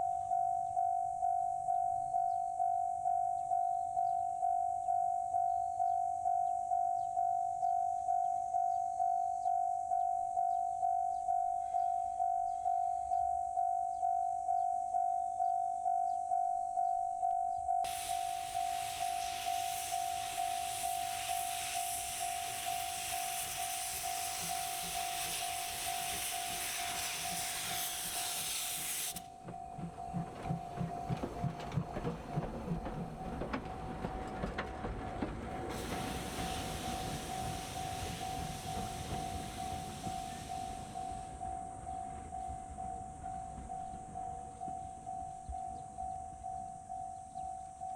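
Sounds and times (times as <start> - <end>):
pulsing ringing tone: 0.0 - 27.3, 38.0 - 47.9
steam locomotive hissing steam: 17.8 - 44.8
rhythmic locomotive exhaust beat: 17.8 - 47.9.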